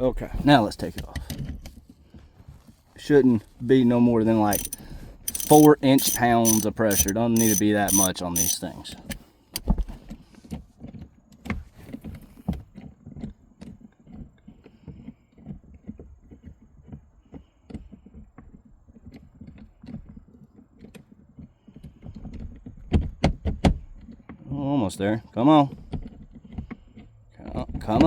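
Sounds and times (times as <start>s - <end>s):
hand ratchet clicking: 4.5s - 8.6s
tool and parts knocking: 4.5s - 8.6s.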